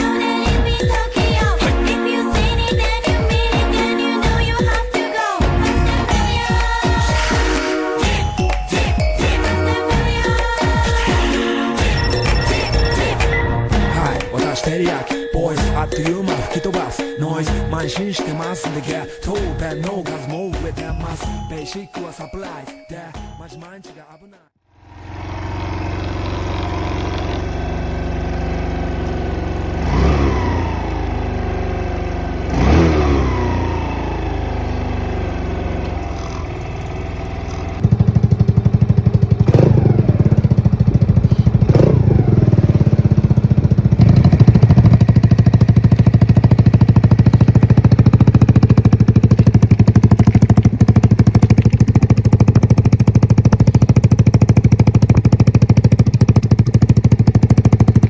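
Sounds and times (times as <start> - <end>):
mini bike engine idling: 0.0 - 4.9, 24.7 - 58.0
engine throttle blips: 24.8 - 58.0.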